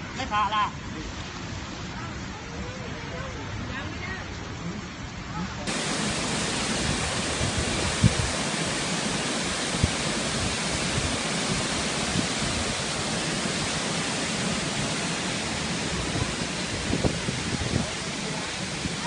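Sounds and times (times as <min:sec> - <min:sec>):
loud rushing noise: 0:05.7 - 0:19.0.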